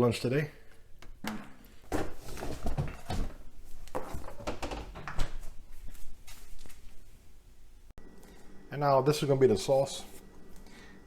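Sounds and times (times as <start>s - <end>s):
door opening and shutting: 4.0s - 5.5s.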